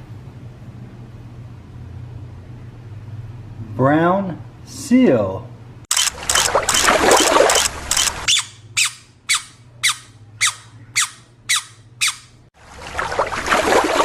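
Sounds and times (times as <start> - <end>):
rapid rhythmic rasping squeak: 7.5 - 12.4
short squeaks falling in pitch: 7.5 - 12.4.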